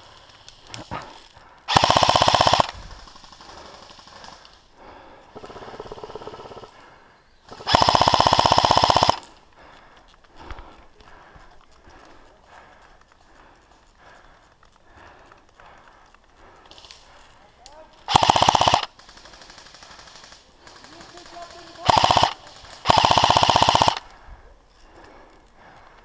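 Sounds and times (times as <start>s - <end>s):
airsoft gun full-auto bursts: 0.0s - 6.8s, 7.5s - 9.4s, 18.0s - 24.1s.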